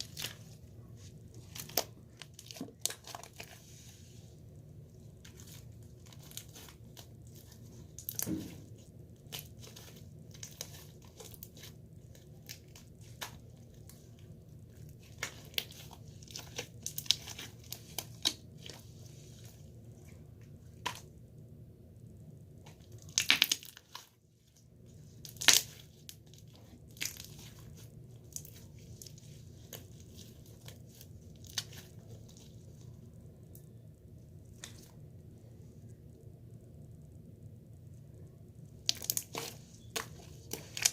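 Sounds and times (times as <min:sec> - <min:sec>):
slime squelching: 0:00.0 - 0:21.2, 0:22.5 - 0:35.2, 0:38.6 - 0:40.9
slime crackling and popping: 0:01.4 - 0:03.6, 0:05.2 - 0:18.9, 0:22.6 - 0:24.2, 0:25.0 - 0:32.6, 0:38.7 - 0:40.9.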